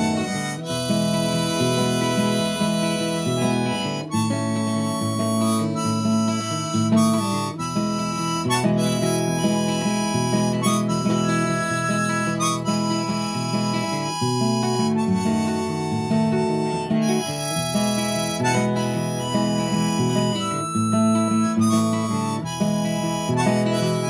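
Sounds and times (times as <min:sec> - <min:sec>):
guitar accompaniment: 0:00.0 - 0:24.0
harmonica playing country tune: 0:00.0 - 0:24.0.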